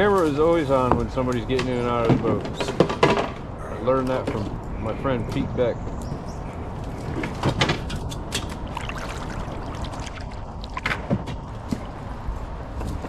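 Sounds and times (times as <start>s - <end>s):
water sloshing: 6.8s - 12.1s
kayak hull knocking and scraping: 6.9s - 12.1s.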